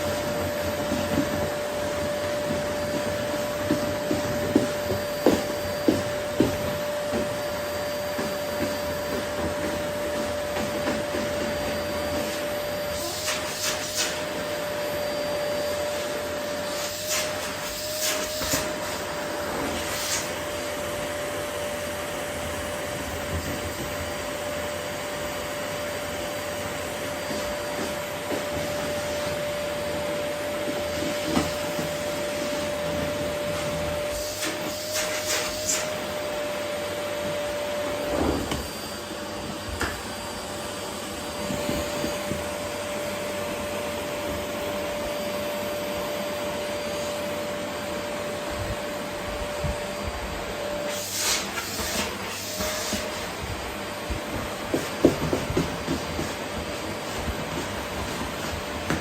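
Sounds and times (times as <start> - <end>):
vacuum cleaner running: 0.0 - 59.0.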